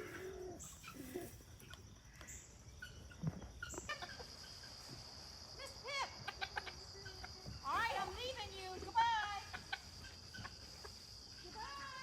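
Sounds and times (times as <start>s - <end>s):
chickens clucking: 6.2s - 7.6s.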